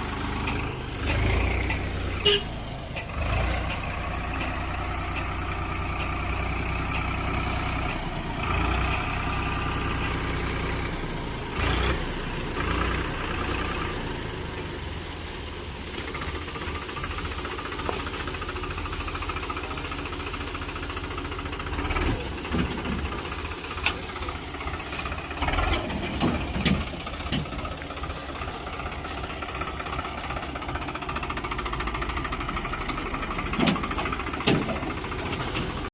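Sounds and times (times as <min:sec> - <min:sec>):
tractor diesel engine running: 0:00.0 - 0:35.9
metal knocks and clanks: 0:25.3 - 0:28.4, 0:32.8 - 0:35.9.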